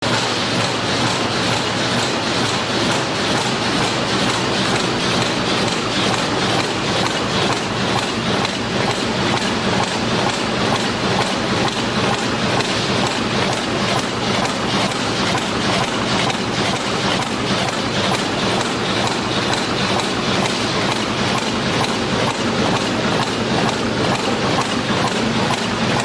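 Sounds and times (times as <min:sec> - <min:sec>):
machine rapid mechanical clatter: 0:00.0 - 0:26.0.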